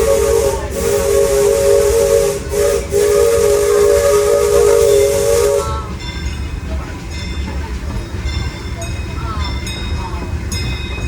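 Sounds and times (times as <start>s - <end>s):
hiss of steam: 0.0s - 5.6s
steam locomotive chime whistle: 0.0s - 6.2s.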